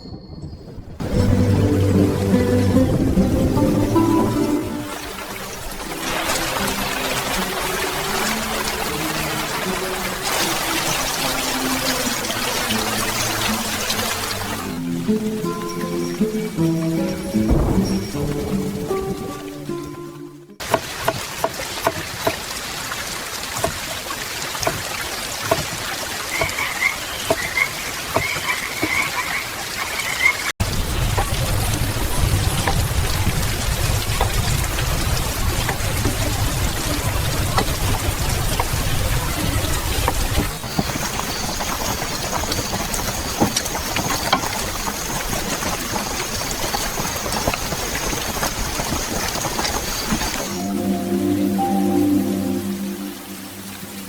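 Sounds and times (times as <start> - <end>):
water drops plinking: 0.0 - 21.2
steady rain: 0.2 - 54.0
frogs croaking: 26.2 - 30.5.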